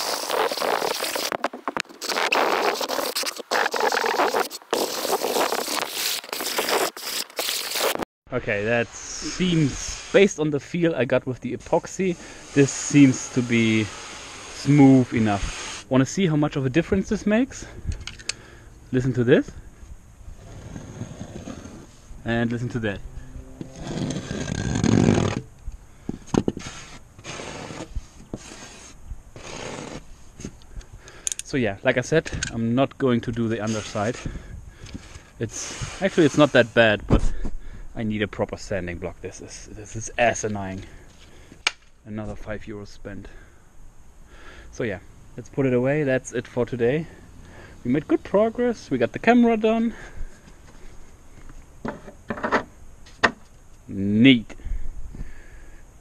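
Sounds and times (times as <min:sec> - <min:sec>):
sandpaper rasping: 0:00.0 - 0:08.0, 0:12.1 - 0:15.9, 0:26.6 - 0:30.1, 0:35.0 - 0:36.7.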